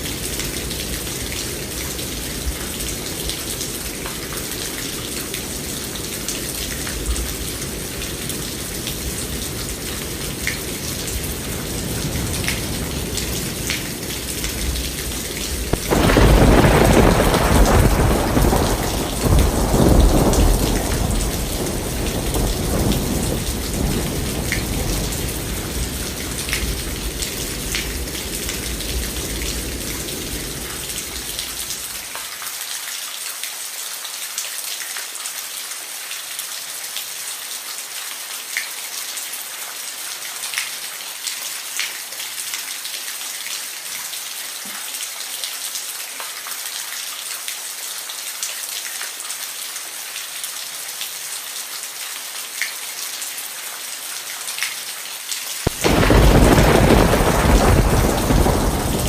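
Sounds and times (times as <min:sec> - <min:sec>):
steady rainfall: 0:00.0 - 0:59.0
thunderclap rumbling: 0:10.7 - 0:31.8, 0:55.7 - 0:59.0.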